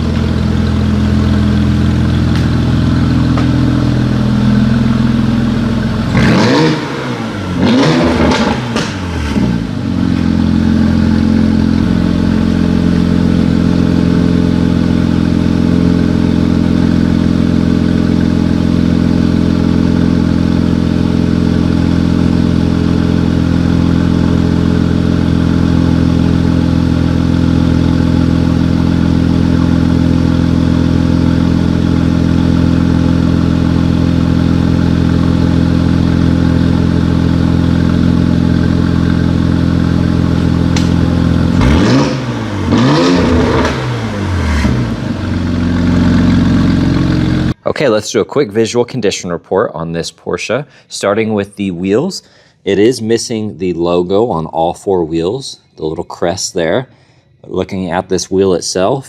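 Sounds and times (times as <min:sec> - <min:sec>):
car engine revving and idling: 0:00.0 - 0:47.6.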